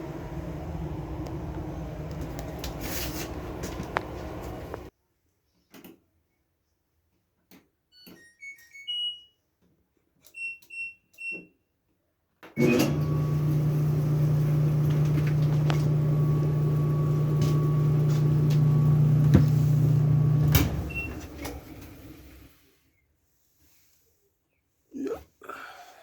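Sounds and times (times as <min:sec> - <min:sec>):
machine running: 0:12.6 - 0:22.4.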